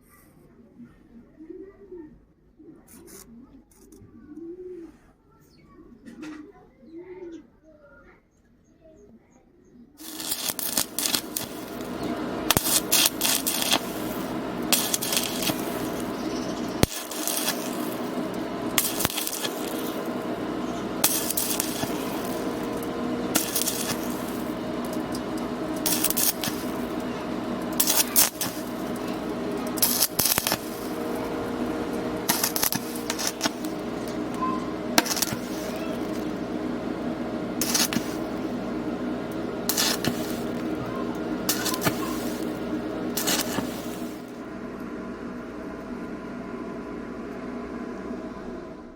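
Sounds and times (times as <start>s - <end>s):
crackling hissing welding arc: 10.0s - 44.5s
steady hum: 10.0s - 48.9s.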